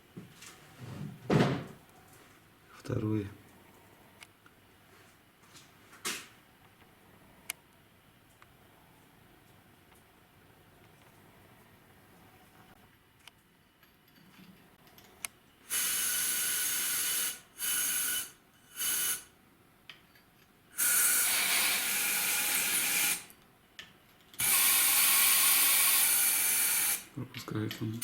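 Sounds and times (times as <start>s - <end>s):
compressed air hissing: 15.7s - 19.3s, 20.8s - 23.3s, 24.4s - 27.1s.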